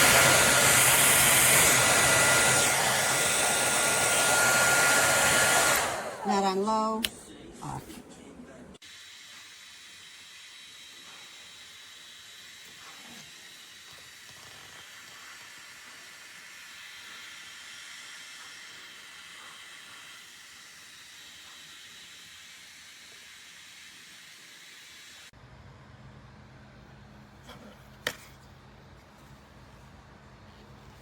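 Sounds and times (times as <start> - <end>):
hair dryer blowing air: 0.0 - 6.6, 8.8 - 25.4.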